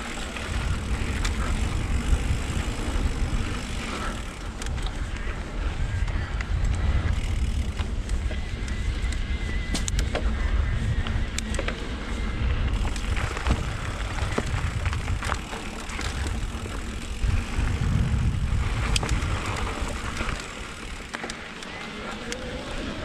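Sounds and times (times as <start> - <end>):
bike rattles and knocks: 0.0 - 23.0
wind rumbling on microphone: 0.0 - 23.0
tyres crunching on gravel: 11.7 - 22.9.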